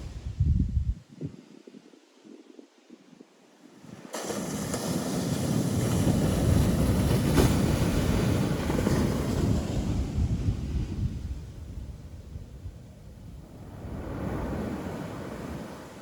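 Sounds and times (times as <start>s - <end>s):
wind buffeting microphone: 0.0s - 16.0s
ocean surf breaking: 3.8s - 12.0s, 13.4s - 16.0s.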